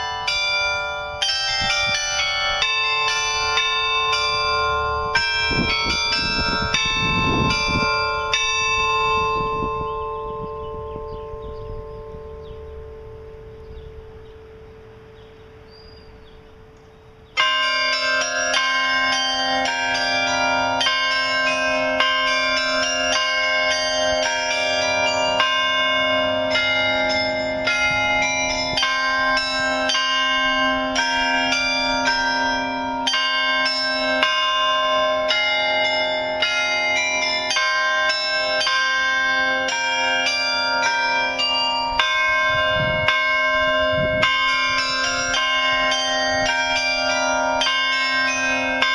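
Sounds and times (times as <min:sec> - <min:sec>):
carillon bells playing a tune: 0:00.0 - 0:48.9
faint lingering bell tones: 0:00.0 - 0:48.9.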